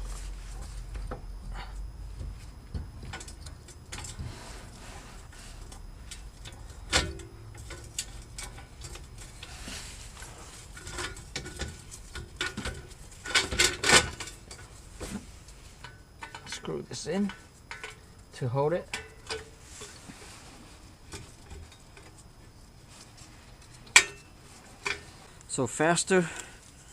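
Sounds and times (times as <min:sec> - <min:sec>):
metallic clinks and knocks: 0:23.6 - 0:25.1.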